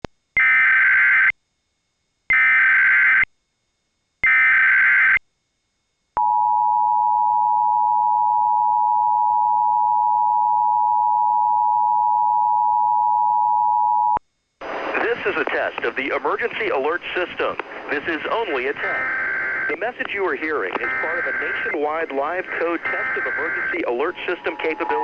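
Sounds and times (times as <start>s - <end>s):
warbling data bursts: 15.0s - 25.0s
two-tone attention signal: 20.8s - 25.0s.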